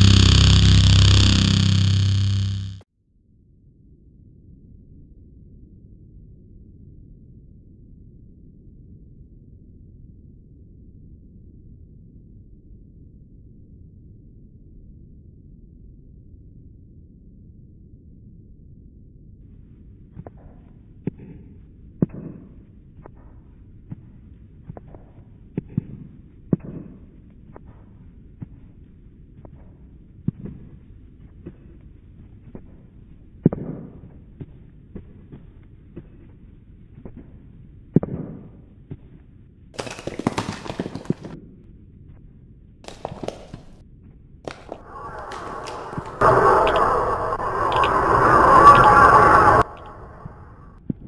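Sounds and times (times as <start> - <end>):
sharp cracks or pops: 39.8 - 41.4, 42.9 - 43.7, 44.5 - 46.8.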